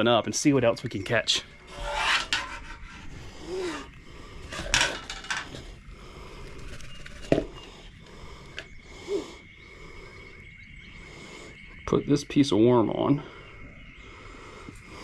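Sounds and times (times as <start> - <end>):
fishing gear rubbing and scraping: 1.6 - 7.9.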